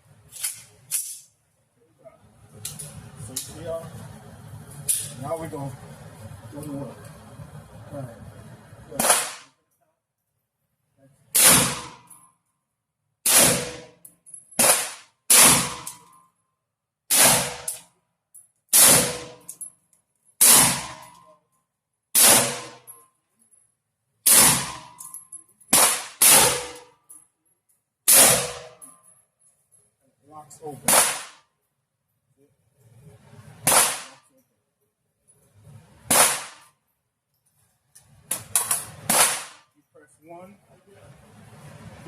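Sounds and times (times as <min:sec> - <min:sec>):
rifle shots: 0:08.9 - 0:09.5, 0:11.3 - 0:12.1, 0:13.2 - 0:14.0, 0:14.6 - 0:16.0, 0:17.1 - 0:17.8, 0:18.7 - 0:19.4, 0:20.4 - 0:21.2, 0:22.2 - 0:22.9, 0:24.2 - 0:25.0, 0:25.7 - 0:26.9, 0:28.1 - 0:28.8, 0:30.9 - 0:31.4, 0:33.6 - 0:34.2, 0:36.1 - 0:36.7, 0:38.4 - 0:39.7.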